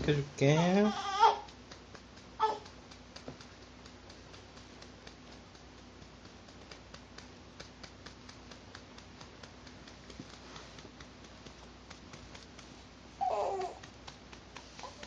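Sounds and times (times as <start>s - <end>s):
hand patting baby's back: 6.5s - 15.0s.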